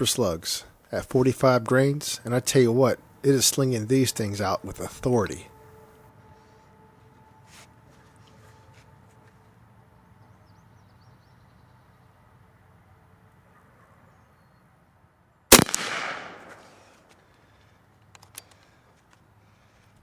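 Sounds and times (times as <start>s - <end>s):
air rifle shot cracking: 15.5s - 17.0s
echo of shot: 15.5s - 17.1s.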